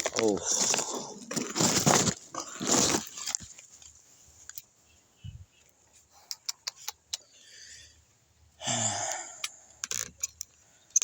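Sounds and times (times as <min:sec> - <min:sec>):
person sighing: 0:08.6 - 0:09.5.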